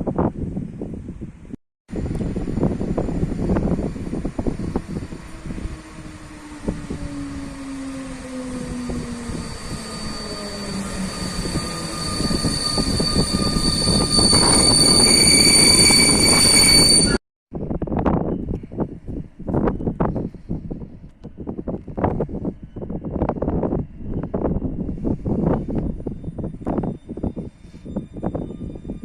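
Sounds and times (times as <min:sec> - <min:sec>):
high-pitched train squealing: 0:01.9 - 0:17.2, 0:22.2 - 0:29.0
train humming: 0:01.9 - 0:17.2.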